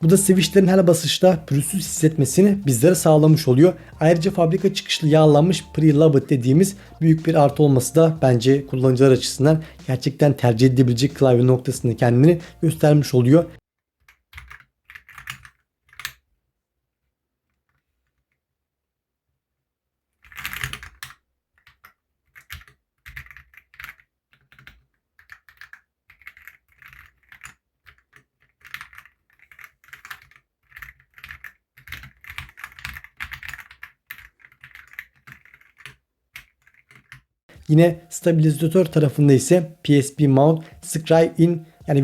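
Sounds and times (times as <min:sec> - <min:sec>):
typing on mechanical keyboard: 0:14.1 - 0:16.1, 0:20.2 - 0:37.2.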